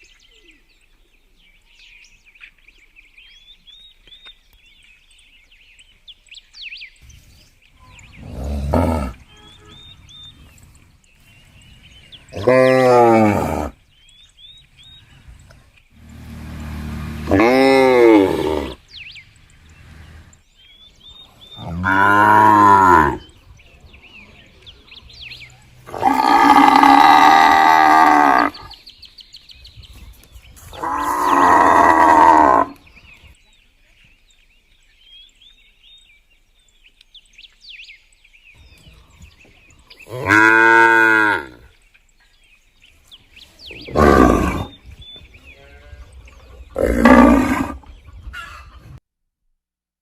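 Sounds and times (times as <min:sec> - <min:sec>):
cattle mooing: 0:16.0 - 0:18.8, 0:21.6 - 0:23.3, 0:25.9 - 0:28.6, 0:30.8 - 0:32.8, 0:40.1 - 0:41.6, 0:45.5 - 0:47.8.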